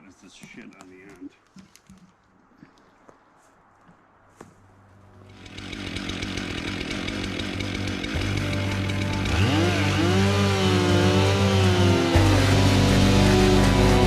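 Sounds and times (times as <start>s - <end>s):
rock music: 8.1s - 14.0s
steady bass note: 8.2s - 14.0s
bending electric guitar lines: 8.4s - 14.0s.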